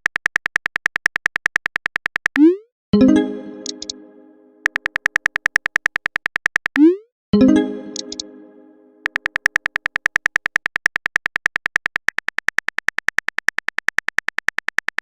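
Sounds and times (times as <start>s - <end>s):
phone keyboard typing clicks: 0.0s - 2.6s, 3.6s - 3.9s, 4.6s - 7.0s, 7.9s - 8.2s, 9.0s - 15.0s.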